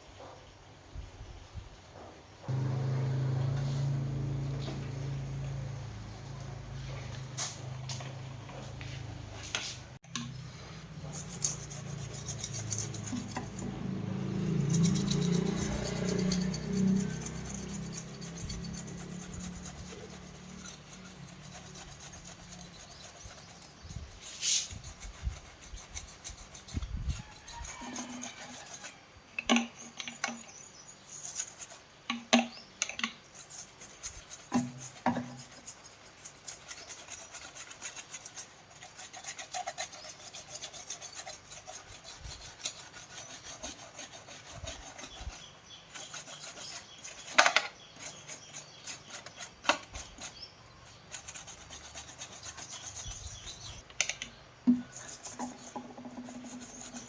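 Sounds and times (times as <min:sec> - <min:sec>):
scraping and rubbing: 0:02.5 - 0:29.7, 0:31.0 - 0:53.9, 0:54.7 - 0:57.0
clicks and taps: 0:53.8 - 0:54.9.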